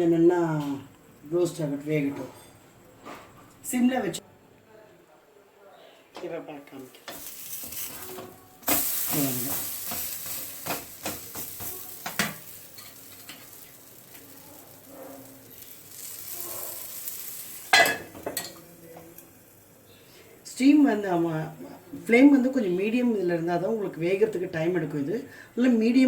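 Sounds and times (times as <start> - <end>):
batter sizzling in oil: 7.0 - 21.5.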